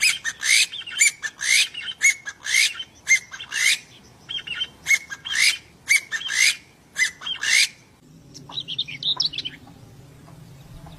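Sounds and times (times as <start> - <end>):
birds squawking harshly: 0.0 - 7.9
birds chirping: 0.0 - 10.9.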